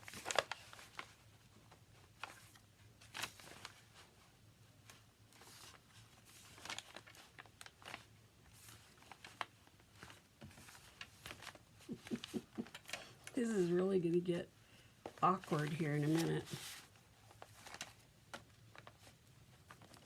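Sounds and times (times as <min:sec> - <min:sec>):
paper rustling: 0:00.0 - 0:13.9, 0:15.0 - 0:20.0
cord drawn through paper: 0:15.1 - 0:17.8.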